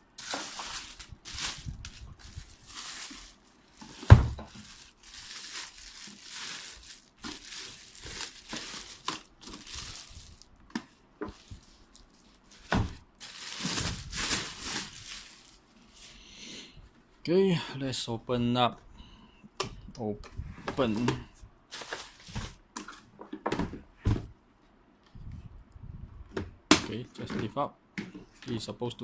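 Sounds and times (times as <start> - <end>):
packaging crinkling and rustling: 0.2 - 16.2, 20.8 - 23.0.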